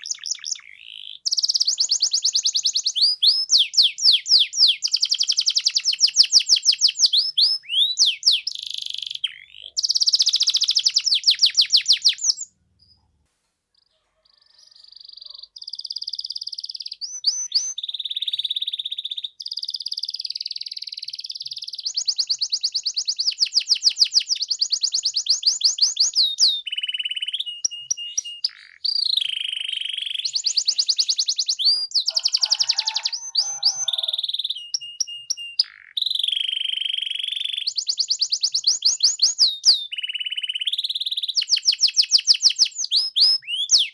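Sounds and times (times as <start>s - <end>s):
canary singing: 0.0s - 13.2s, 13.8s - 43.9s.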